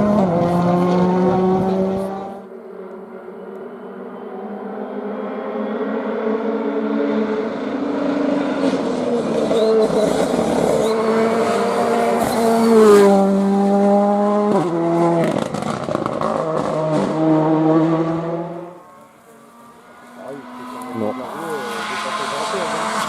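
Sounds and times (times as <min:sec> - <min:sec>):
rally car engine revving: 0:00.0 - 0:02.5, 0:05.6 - 0:23.0
car braking: 0:08.5 - 0:23.0.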